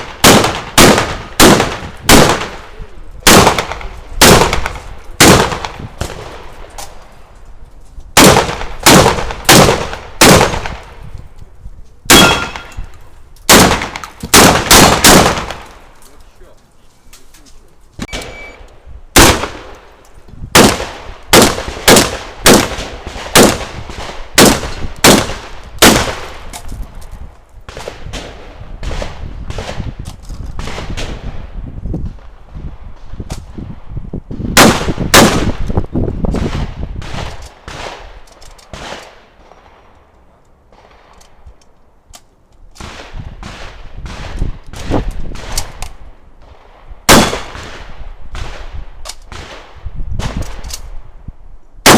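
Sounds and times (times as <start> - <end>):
shotgun shots: 0.0 - 6.5, 8.2 - 11.0, 12.1 - 12.8, 13.5 - 15.8, 19.2 - 19.7, 20.5 - 26.5, 34.6 - 35.6, 36.3 - 39.6, 46.4 - 50.6.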